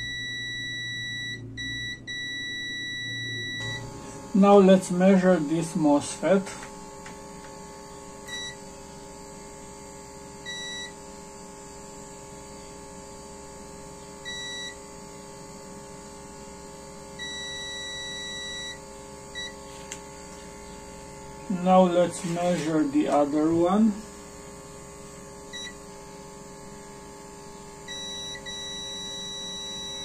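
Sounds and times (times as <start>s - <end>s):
multimeter beeping: 0.0s - 5.2s, 7.9s - 8.6s, 10.4s - 11.0s, 14.2s - 14.8s, 17.2s - 19.7s, 25.5s - 25.9s, 27.6s - 30.0s
faint steady hum: 0.0s - 30.0s.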